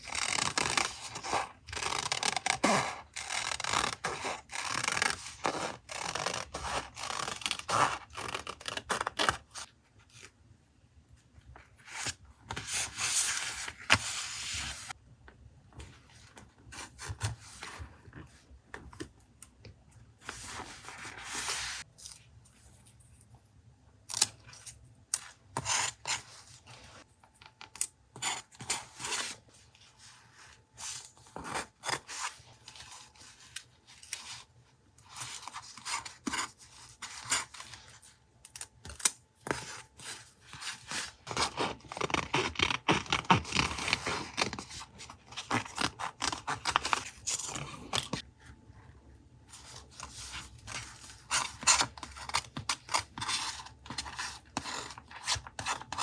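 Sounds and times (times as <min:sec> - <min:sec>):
paper rubbing and scraping: 0:11.9 - 0:14.9, 0:20.2 - 0:21.9.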